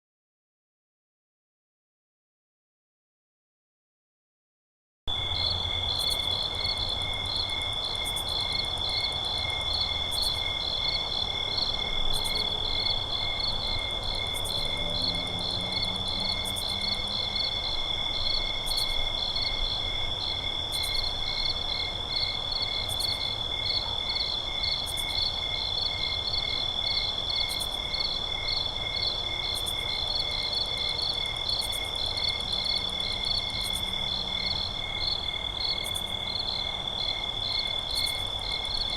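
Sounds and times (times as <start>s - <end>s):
crickets chirping: 5.1s - 38.9s.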